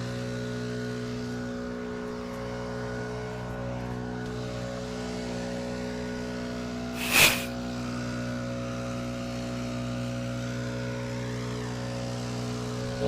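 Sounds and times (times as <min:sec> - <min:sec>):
loud whoosh: 0:07.0 - 0:07.5.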